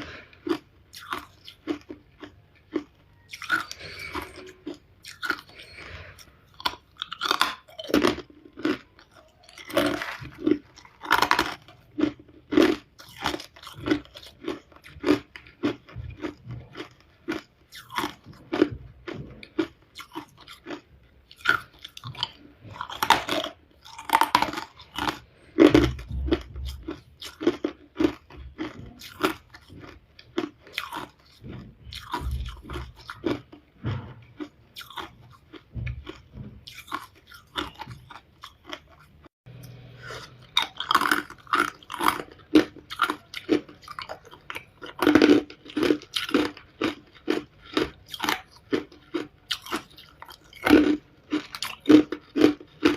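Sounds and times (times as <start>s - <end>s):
ice being chewed: 0.0s - 52.9s.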